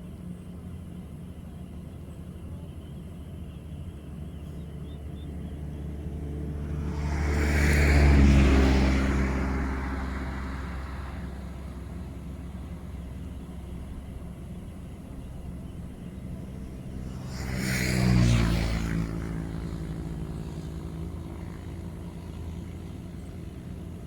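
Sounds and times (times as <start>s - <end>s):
engine running steadily: 0.0s - 24.0s
vehicle passing close: 5.2s - 14.6s, 15.5s - 24.0s.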